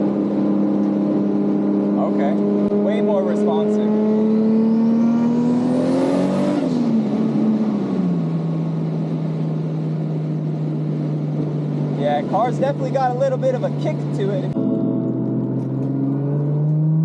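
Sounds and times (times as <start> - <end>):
car engine accelerating: 0.0 - 17.0
high whine: 11.2 - 17.0.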